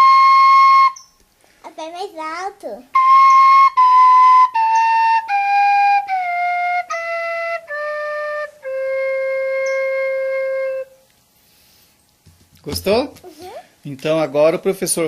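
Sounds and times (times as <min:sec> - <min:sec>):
flute playing descending scale: 0:00.0 - 0:01.0, 0:03.0 - 0:11.0.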